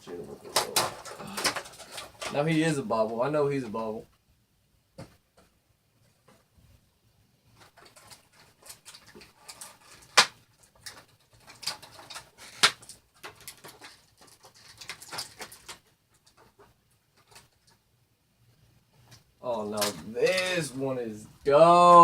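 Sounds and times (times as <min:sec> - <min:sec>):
packaging crinkling and rustling: 0:07.6 - 0:16.4.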